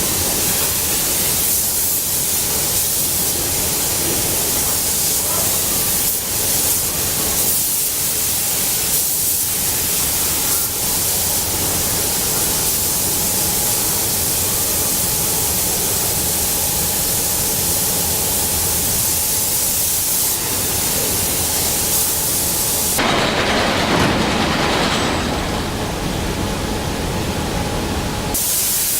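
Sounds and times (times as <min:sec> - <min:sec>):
production line machinery hissing: 0:00.0 - 0:28.9.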